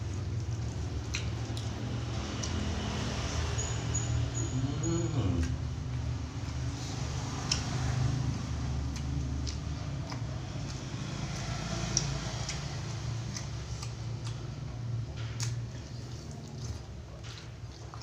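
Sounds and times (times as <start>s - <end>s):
person chewing: 0.0s - 18.0s
mouth clicks and smacks: 0.4s - 2.6s, 3.6s - 10.9s.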